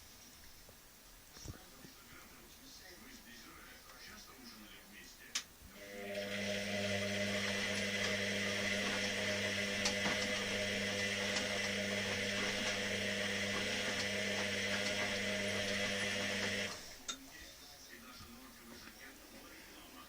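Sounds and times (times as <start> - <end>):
washing machine motor hum: 5.7 - 17.4
washing machine whirring: 5.7 - 17.4.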